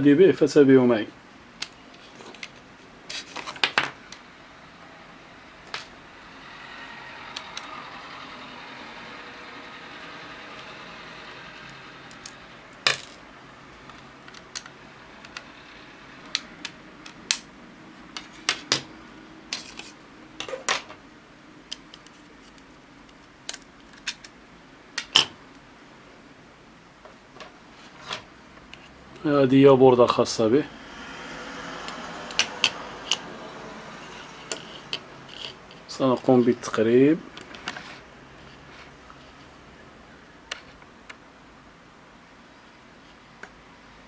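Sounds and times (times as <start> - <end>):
small parts clicking and clinking: 6.8 - 15.6, 21.7 - 24.4, 34.0 - 36.3.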